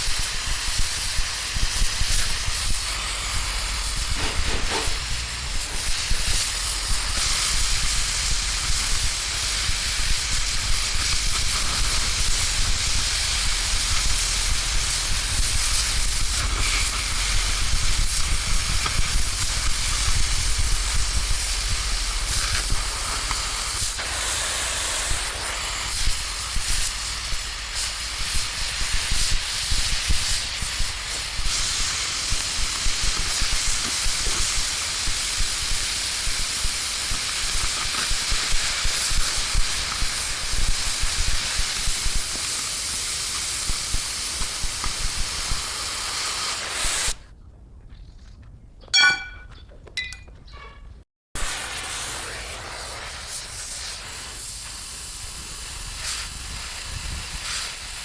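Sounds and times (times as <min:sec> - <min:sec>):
crackling hiss: 0:00.0 - 0:47.2, 0:51.4 - 0:58.0.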